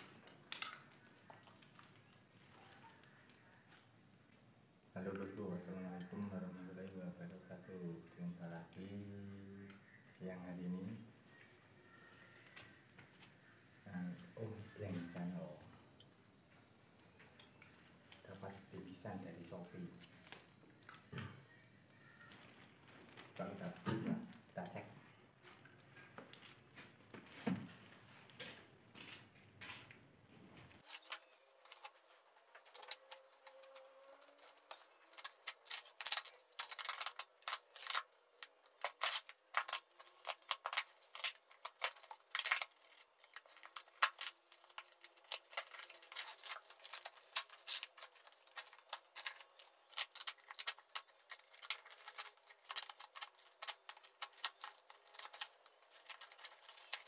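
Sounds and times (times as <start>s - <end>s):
parcel being unpacked by hand: 30.7s - 57.0s.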